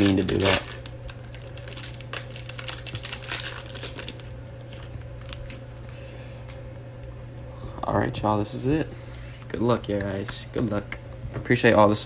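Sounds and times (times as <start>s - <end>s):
card wrappers crinkling: 0.0s - 6.6s
steady low hum: 0.0s - 12.0s.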